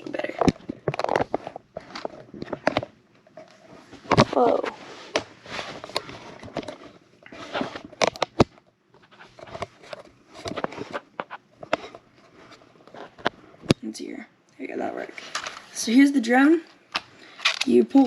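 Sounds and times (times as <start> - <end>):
rustling: 0.0 - 13.7.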